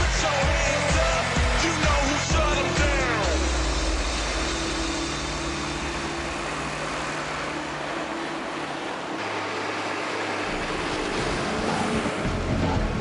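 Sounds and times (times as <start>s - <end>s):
dense mechanical noise: 0.0s - 13.0s
tractor engine running: 0.0s - 13.0s.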